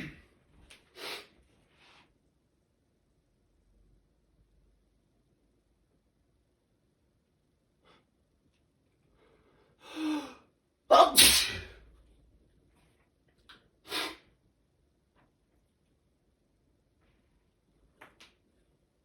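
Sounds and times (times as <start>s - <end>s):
loud sneeze: 0.0s - 0.3s, 10.9s - 11.8s
person sniffing: 0.9s - 1.4s, 13.8s - 14.3s.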